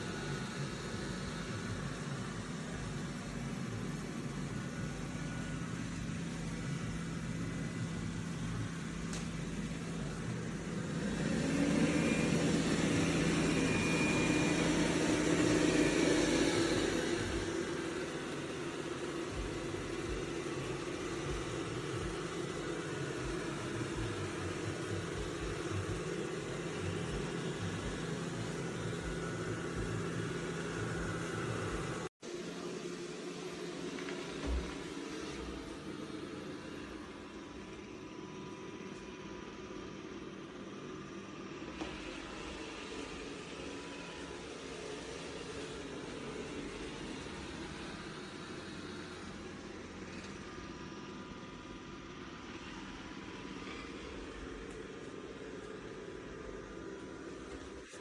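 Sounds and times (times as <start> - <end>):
high-pitched motor whine: 0.0 - 32.1
robot vacuum motor hum: 0.0 - 58.0.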